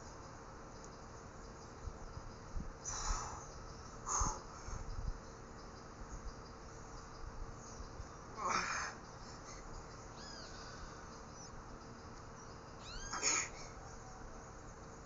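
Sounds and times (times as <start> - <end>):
faint high chirps: 8.8 - 14.8.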